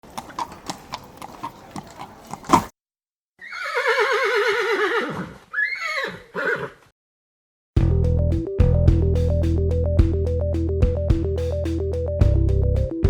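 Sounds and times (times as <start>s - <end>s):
horse hooves clip-clopping: 0.0s - 2.7s
horse whinnying: 3.4s - 6.8s.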